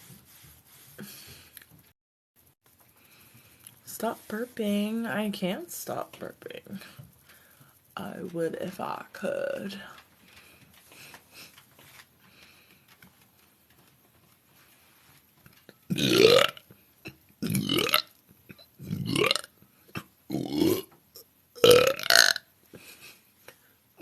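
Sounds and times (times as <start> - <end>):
woman burping: 15.9 - 16.6, 17.4 - 22.4.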